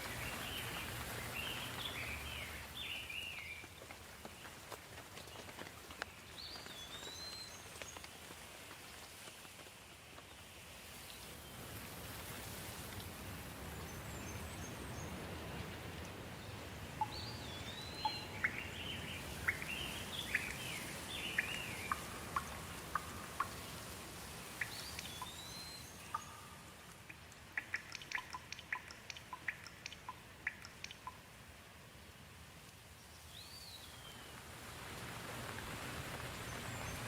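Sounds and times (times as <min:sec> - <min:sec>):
steady rain: 0:00.0 - 0:37.0
bird chirps: 0:17.0 - 0:23.9, 0:24.5 - 0:31.2
sharp ticks: 0:21.3 - 0:23.7, 0:26.1 - 0:31.2.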